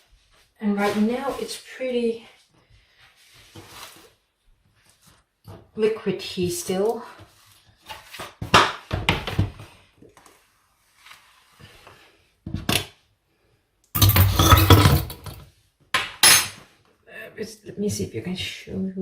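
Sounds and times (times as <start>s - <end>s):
dishes and utensils clattering: 14.0s - 15.4s.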